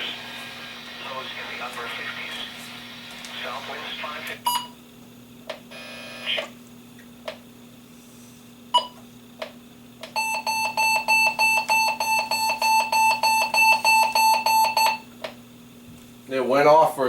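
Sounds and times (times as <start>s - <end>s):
steady low hum: 0.0s - 17.0s
electronic alarm beeping: 4.4s - 4.8s, 10.2s - 15.1s.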